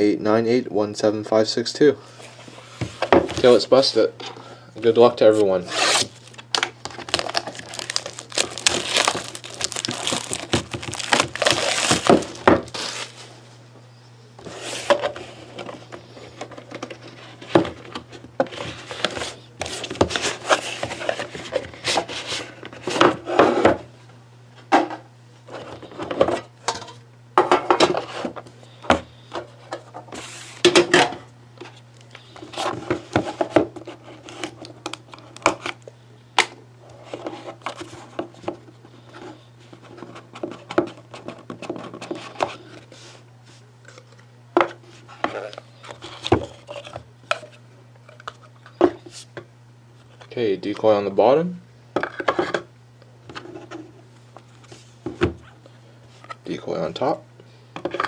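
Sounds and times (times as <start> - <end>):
steady low hum: 0.0 - 58.0
wrapping crinkling and tearing: 5.7 - 13.3.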